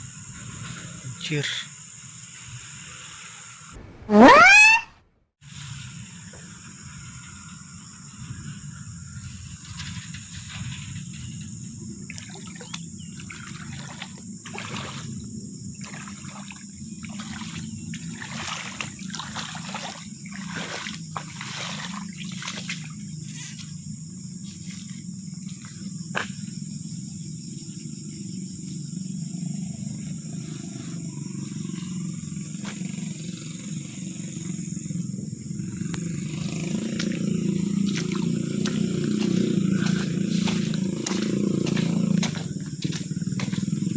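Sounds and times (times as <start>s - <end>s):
floodwater roaring: 12.0s - 23.4s, 35.7s - 43.9s
crackling splashes: 12.1s - 15.1s, 15.8s - 23.0s.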